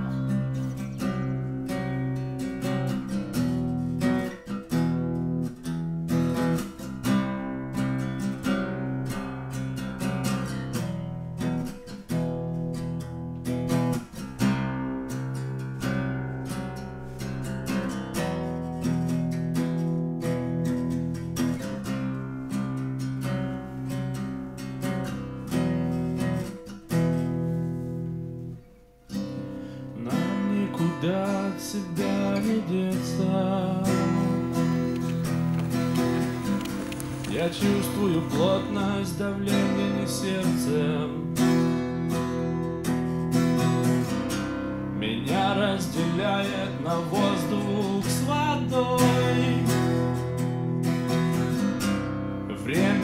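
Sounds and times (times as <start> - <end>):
acoustic guitar strumming: 0.0 - 53.0.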